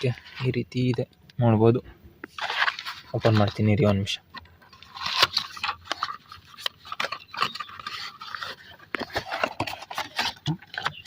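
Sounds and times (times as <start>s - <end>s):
plastic bottle scraping: 0.0s - 1.0s, 2.2s - 11.0s
packaging crinkling: 2.2s - 11.0s.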